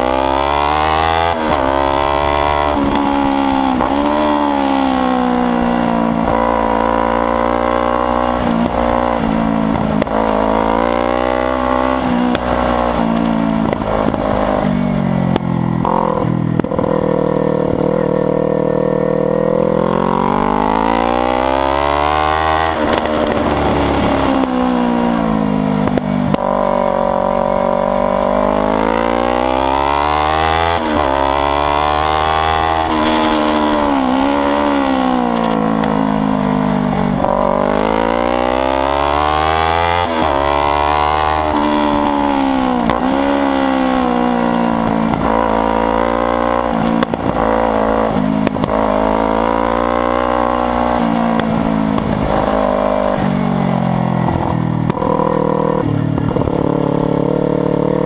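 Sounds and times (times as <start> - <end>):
motorcycle engine revving: 0.0 - 58.0.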